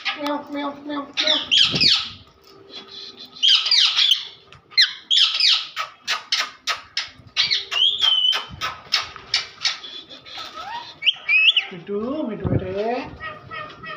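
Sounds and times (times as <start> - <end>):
parrot squawking: 1.2 - 2.2, 3.0 - 11.8, 13.0 - 13.9
parrot whistle: 7.4 - 8.6, 10.7 - 11.7.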